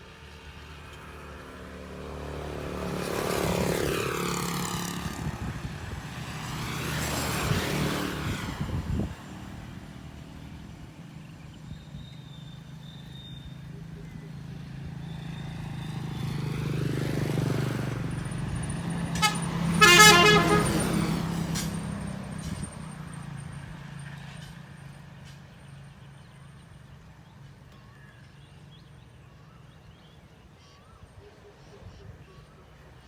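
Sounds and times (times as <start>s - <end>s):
vehicle engine passing by: 0.0s - 26.1s
car horn honking: 19.2s - 21.0s.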